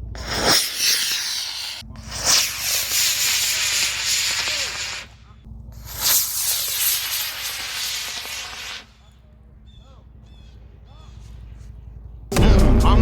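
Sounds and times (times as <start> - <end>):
rocket motor rushing hiss: 0.0 - 5.2, 5.8 - 9.0.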